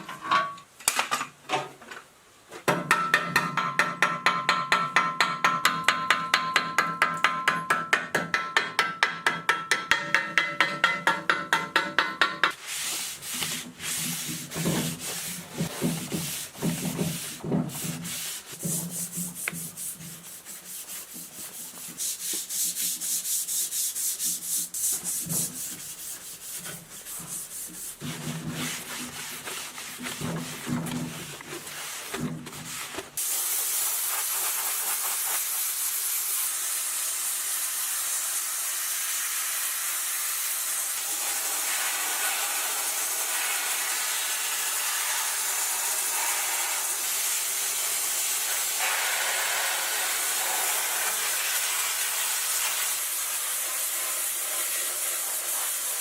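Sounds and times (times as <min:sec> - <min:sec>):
steady hiss: 0:12.2 - 0:56.0
abrasive rubbing on metal: 0:12.7 - 0:32.1.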